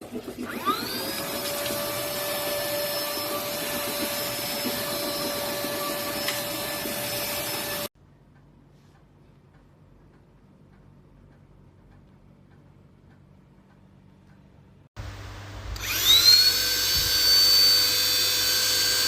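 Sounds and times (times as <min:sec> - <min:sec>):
handheld vacuum cleaner whining: 0:00.2 - 0:08.0, 0:15.7 - 0:19.0.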